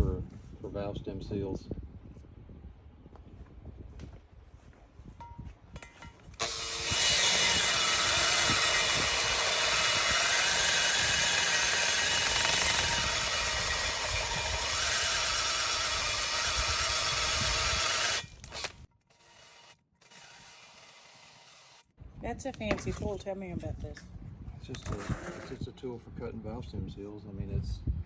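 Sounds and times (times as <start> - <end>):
power tool cutting metal: 6.4 - 21.8.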